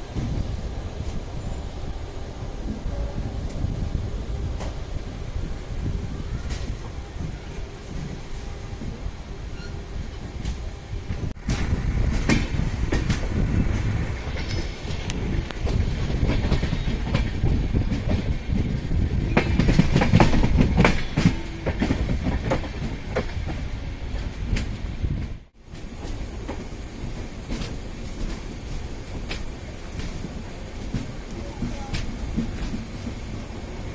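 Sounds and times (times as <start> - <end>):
train coaches rumbling: 0.0 - 33.9
wheels clacking over rail joints: 9.6 - 33.9.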